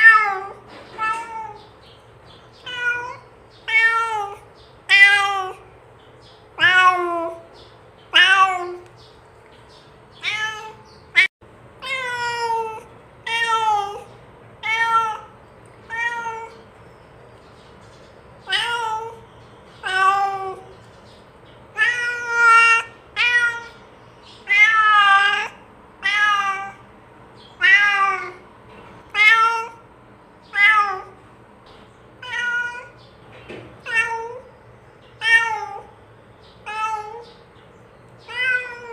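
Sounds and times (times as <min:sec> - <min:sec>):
cat meowing: 0:00.0 - 0:01.7, 0:02.6 - 0:05.7, 0:06.6 - 0:07.5, 0:08.1 - 0:08.9, 0:10.2 - 0:16.7, 0:18.4 - 0:19.2, 0:19.8 - 0:20.7, 0:21.8 - 0:23.8, 0:24.4 - 0:26.8, 0:27.6 - 0:28.4, 0:29.1 - 0:29.8, 0:30.5 - 0:31.2, 0:32.2 - 0:33.0, 0:33.8 - 0:34.5, 0:35.2 - 0:35.9, 0:36.6 - 0:37.4, 0:38.2 - 0:38.9.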